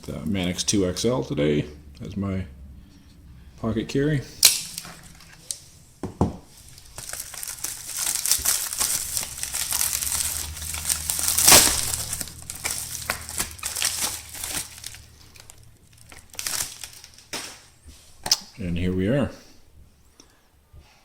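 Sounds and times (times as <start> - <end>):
packaging crinkling and tearing: 4.4 - 5.8, 6.5 - 18.3.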